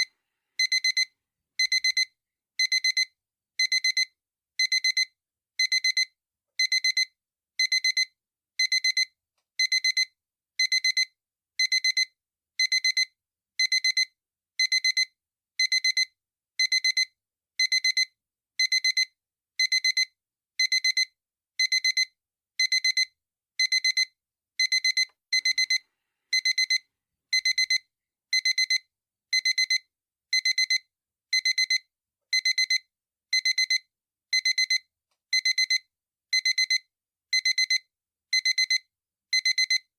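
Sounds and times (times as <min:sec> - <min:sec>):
alarm clock beeping: 0:00.0 - 0:29.8, 0:30.4 - 0:33.8, 0:34.4 - 0:35.8, 0:36.4 - 0:36.8, 0:37.4 - 0:37.8, 0:38.4 - 0:38.8, 0:39.4 - 0:39.8.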